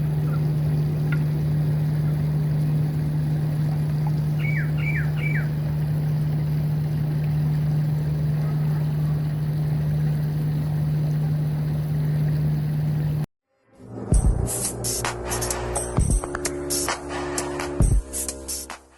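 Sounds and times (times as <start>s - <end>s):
splashing running water: 0.0s - 13.3s
low hum: 0.0s - 16.7s
small bird chirping: 4.3s - 5.6s.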